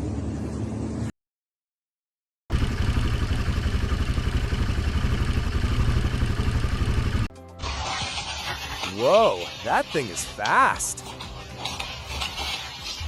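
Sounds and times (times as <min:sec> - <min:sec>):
engine running with fast pulsing: 0:02.5 - 0:07.9.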